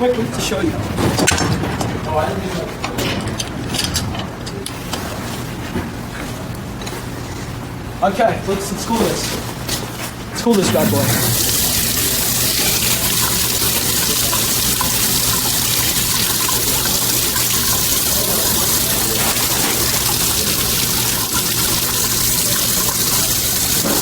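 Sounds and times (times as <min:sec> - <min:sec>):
water running from a tap: 0:10.4 - 0:24.0.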